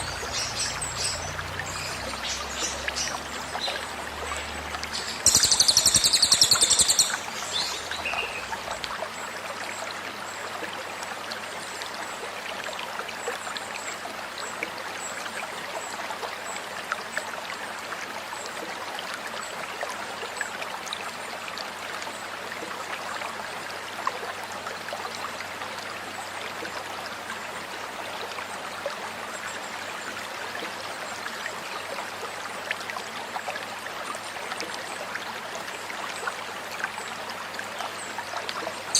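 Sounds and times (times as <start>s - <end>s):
stream trickling: 0.0s - 38.9s
songbird piercing notes: 4.9s - 8.4s.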